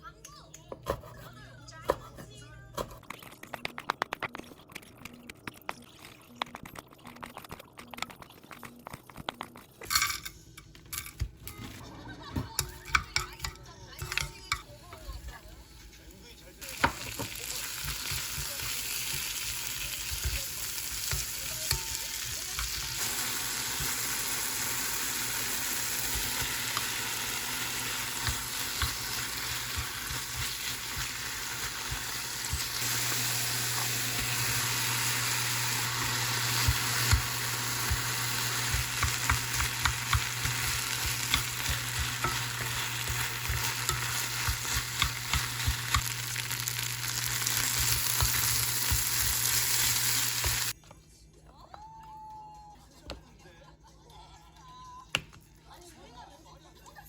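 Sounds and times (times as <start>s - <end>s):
food sizzling in a frying pan: 14.0s - 50.8s.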